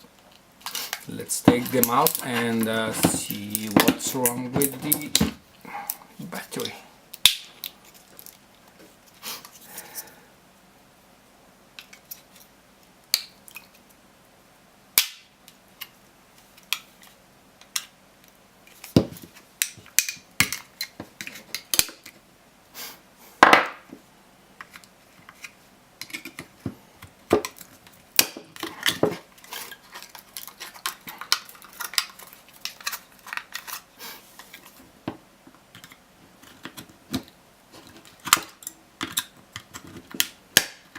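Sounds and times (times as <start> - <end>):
clicks and scrapes of plastic and metal: 24.6 - 34.8, 35.7 - 40.3.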